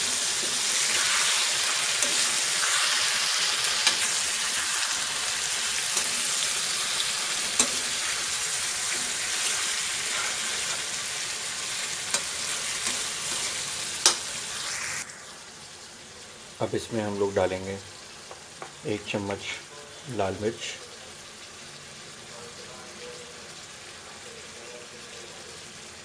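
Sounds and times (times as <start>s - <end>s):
food sizzling in hot oil: 0.0s - 26.0s
spoon clicking against pan: 12.1s - 13.4s, 14.0s - 14.3s.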